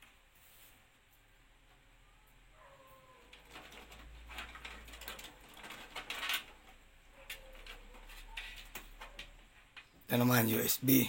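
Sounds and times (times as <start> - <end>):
cable rustles: 3.1 - 10.0.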